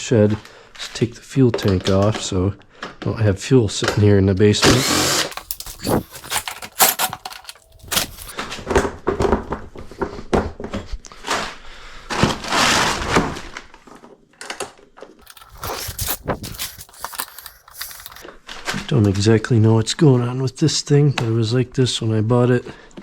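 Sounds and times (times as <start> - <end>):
rustling scrape: 5.3 - 8.4, 15.2 - 18.2.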